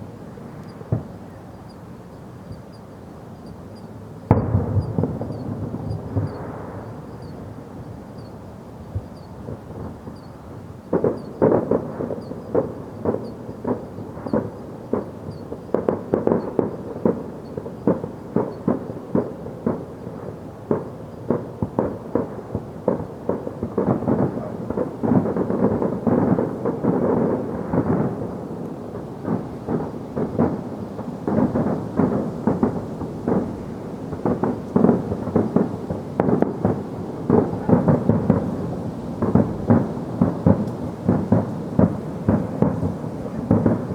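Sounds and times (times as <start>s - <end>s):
fireworks bangs: 0.0s - 43.9s.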